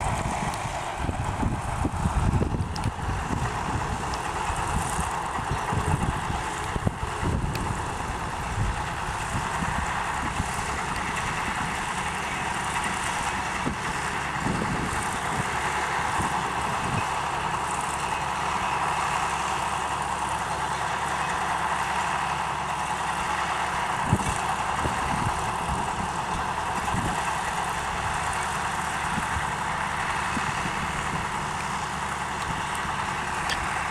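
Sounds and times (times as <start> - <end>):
wind buffeting microphone: 0.0 - 17.6, 23.8 - 33.9
round baler working: 0.0 - 33.9
tractor diesel engine running: 0.0 - 33.9.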